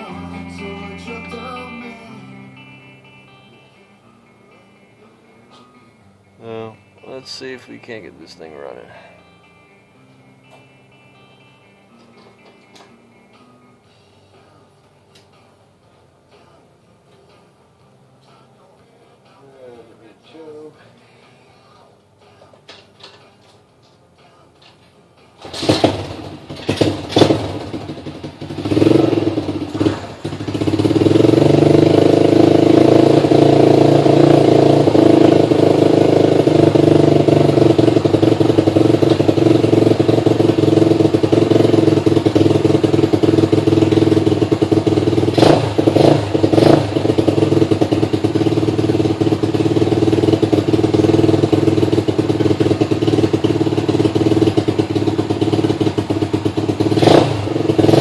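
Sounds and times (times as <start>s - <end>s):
motorbike engine starting and running: 24.6s - 58.0s.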